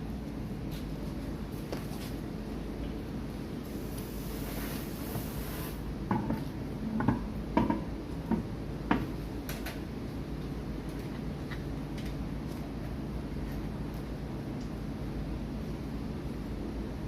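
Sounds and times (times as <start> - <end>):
steady background hum: 0.0 - 17.0
tools knocking and clunking: 6.1 - 9.1.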